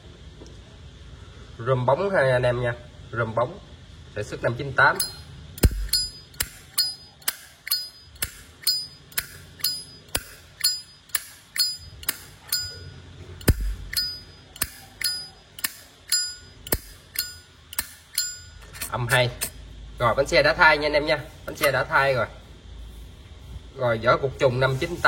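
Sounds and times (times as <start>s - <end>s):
short high metallic ring: 5.0s - 19.5s
lighter lid clicking open and shut: 5.6s - 12.7s.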